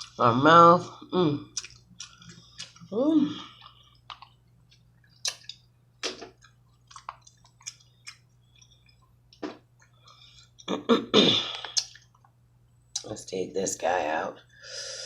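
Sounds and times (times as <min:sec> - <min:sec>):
wet chewing and lip smacking: 0:01.5 - 0:02.9, 0:03.5 - 0:05.7, 0:06.3 - 0:10.7, 0:11.5 - 0:13.1.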